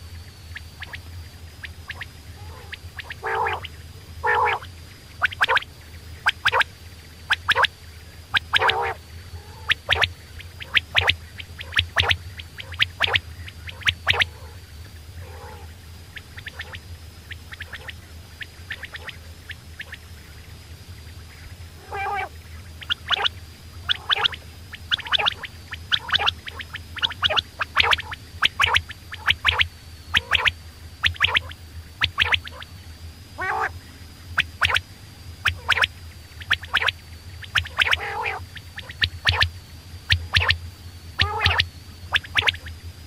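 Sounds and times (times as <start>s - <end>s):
low hum: 0.0s - 43.0s
quail calling: 1.6s - 6.7s, 8.3s - 14.6s, 15.2s - 19.2s, 21.8s - 32.6s, 33.4s - 33.7s, 34.4s - 34.8s, 35.4s - 39.5s, 40.1s - 40.6s, 41.2s - 42.7s.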